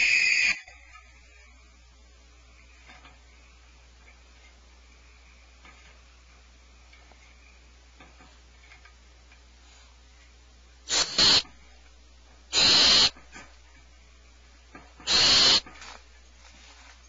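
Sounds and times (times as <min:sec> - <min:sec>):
owl screeching: 0:00.0 - 0:00.7, 0:12.5 - 0:13.2, 0:15.1 - 0:15.7.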